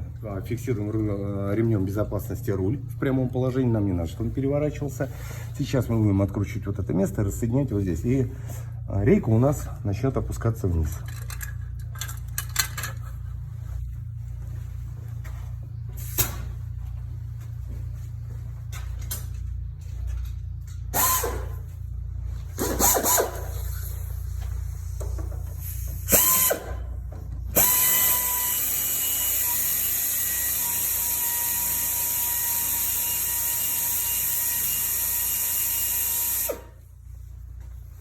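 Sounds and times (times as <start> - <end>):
power tool whining: 25.7 - 26.9, 27.5 - 36.8.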